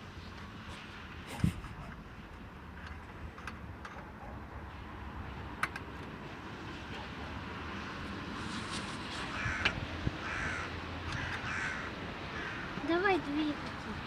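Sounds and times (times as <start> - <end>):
bird harsh calls: 10.2 - 12.8.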